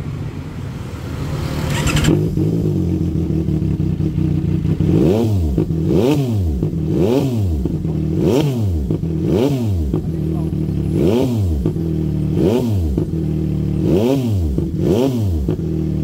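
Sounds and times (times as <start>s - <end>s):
motorcycle engine idling and revving: 0.0s - 16.0s.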